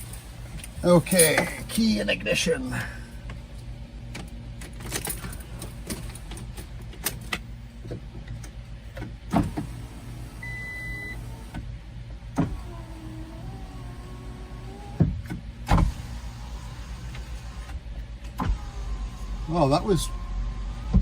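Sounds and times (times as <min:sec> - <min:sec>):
steady low hum: 0:00.0 - 0:21.0
power window motor whining: 0:09.2 - 0:11.7, 0:12.3 - 0:21.0.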